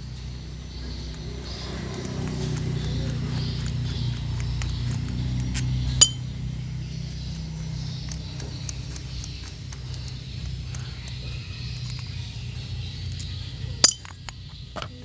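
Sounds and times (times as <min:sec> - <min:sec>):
low steady hum: 0:00.0 - 0:15.0
small metal parts clinking: 0:05.4 - 0:06.2, 0:13.1 - 0:15.0.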